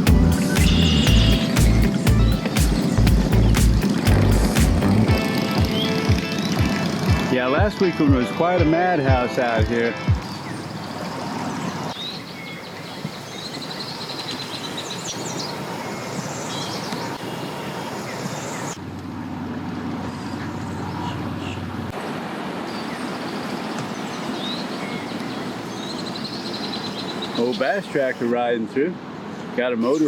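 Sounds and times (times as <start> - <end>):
small birds chirping: 0.0 - 7.4, 9.4 - 18.8, 22.7 - 28.4, 29.1 - 30.0
vehicle noise: 0.0 - 8.1, 10.2 - 30.0
steady wind: 0.0 - 30.0.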